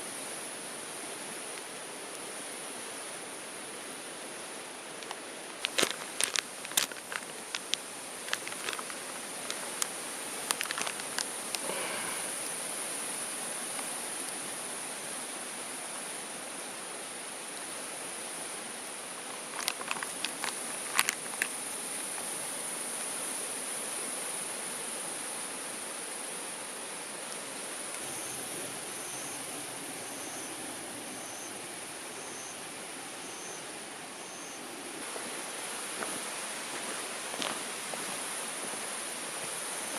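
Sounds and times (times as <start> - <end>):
insects chirring: 0.0 - 39.9
soft hiss: 0.0 - 39.9
handling clicks and knocks: 5.0 - 9.9.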